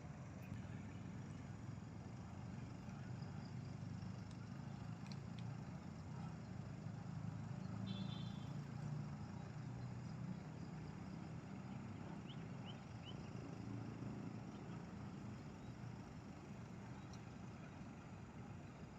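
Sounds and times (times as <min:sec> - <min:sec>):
engine humming at low speed: 0:00.0 - 0:18.9
faint high chirps: 0:07.6 - 0:08.7.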